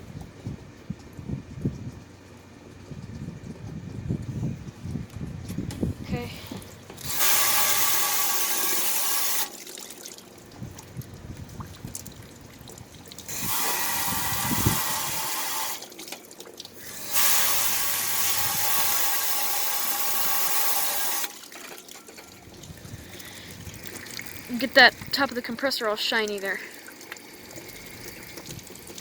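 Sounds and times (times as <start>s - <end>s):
water dripping and trickling: 0.0s - 29.0s
hose nozzle spraying water: 6.6s - 10.1s, 13.1s - 21.8s.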